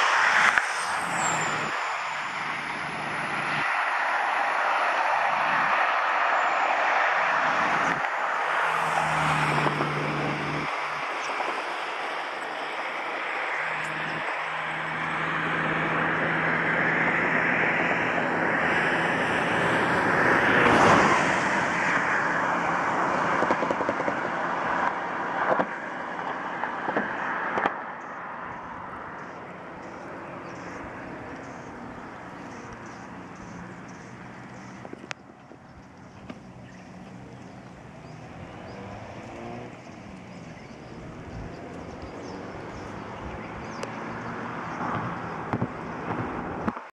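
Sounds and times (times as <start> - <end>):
floodwater rushing: 0.0 - 17.4.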